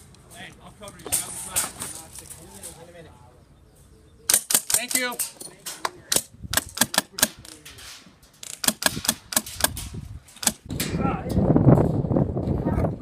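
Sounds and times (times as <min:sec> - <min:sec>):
airsoft guns firing: 0:08.5 - 0:09.8, 0:10.4 - 0:10.7.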